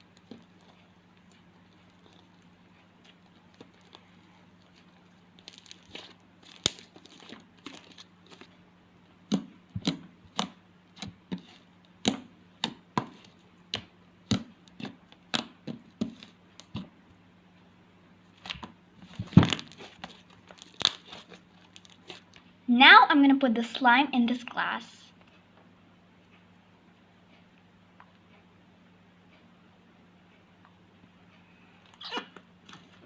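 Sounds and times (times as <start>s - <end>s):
faint steady hum: 0.0s - 33.0s
slime popping when stretched: 5.4s - 8.0s.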